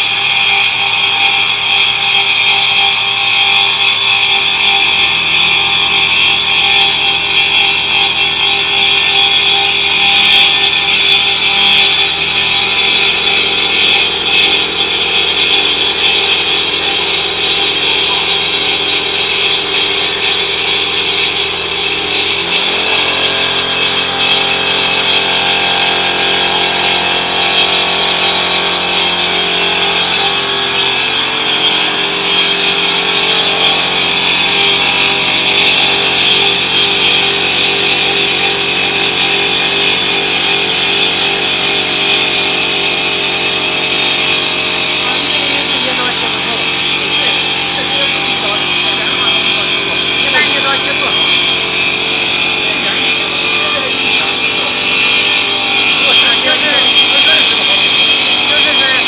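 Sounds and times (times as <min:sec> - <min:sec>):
cutting machine hissing: 0:00.0 - 0:59.0
motor tones: 0:00.0 - 0:59.0.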